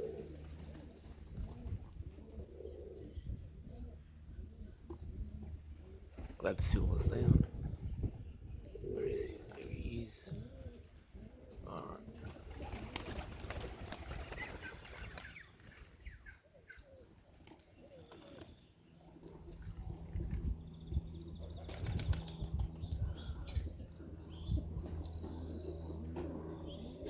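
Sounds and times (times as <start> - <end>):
pigeon wings flapping: 0.0 - 2.4, 12.0 - 15.8, 21.6 - 22.8
steady low hum: 0.0 - 17.4, 18.0 - 27.0.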